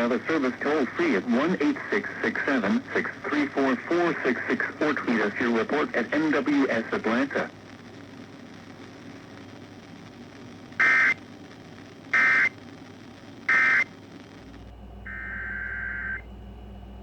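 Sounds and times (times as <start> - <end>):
two-tone digital data squawks: 10.8 - 11.2, 12.2 - 12.5, 13.5 - 13.9, 15.1 - 16.2.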